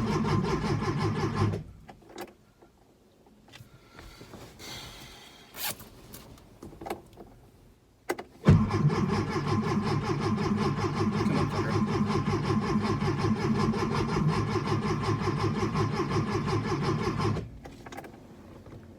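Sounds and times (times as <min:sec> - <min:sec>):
starter cranking engine: 0:08.5 - 0:17.5.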